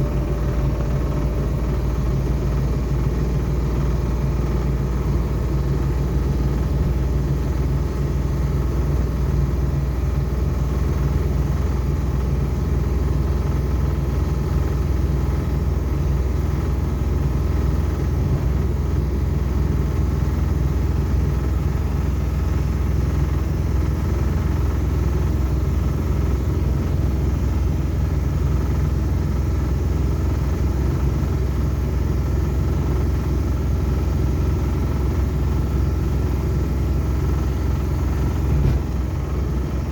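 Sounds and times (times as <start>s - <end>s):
vehicle engine running steadily: 0.0s - 39.9s.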